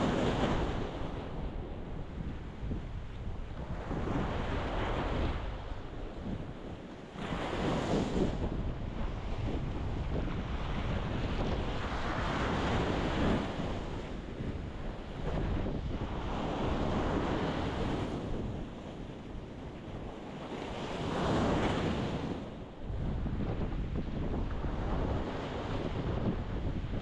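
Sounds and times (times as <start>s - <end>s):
waves breaking on rocky shore: 0.0s - 2.8s
wind rumble on microphone: 0.0s - 27.0s.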